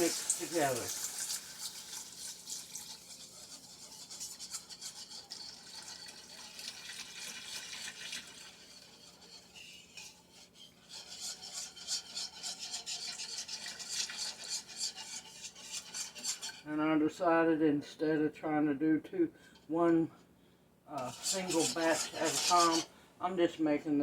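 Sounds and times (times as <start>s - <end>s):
utensil scraping a pan: 0.0s - 16.7s, 21.0s - 23.0s.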